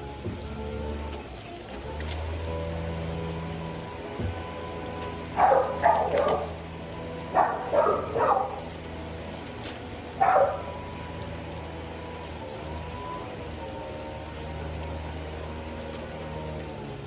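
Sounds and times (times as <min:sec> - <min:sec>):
dog barking: 0:05.4 - 0:06.6, 0:07.3 - 0:08.8, 0:10.2 - 0:10.8.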